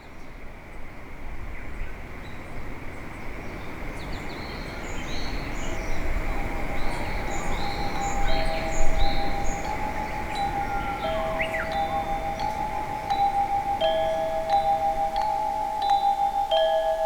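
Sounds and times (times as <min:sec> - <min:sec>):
low noisy rumble: 0:06.2 - 0:17.0
steady held tones: 0:07.2 - 0:17.0.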